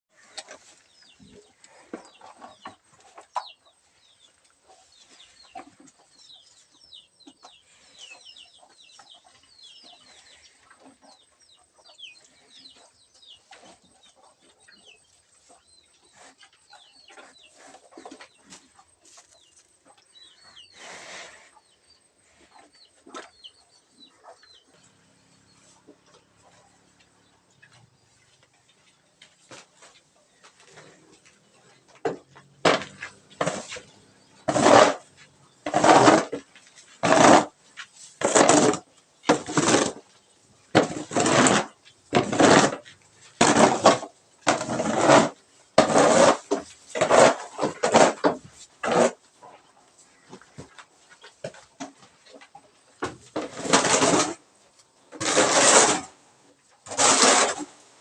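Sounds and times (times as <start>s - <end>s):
chickens clucking and peeping: 0.2s - 35.8s, 46.6s - 53.3s.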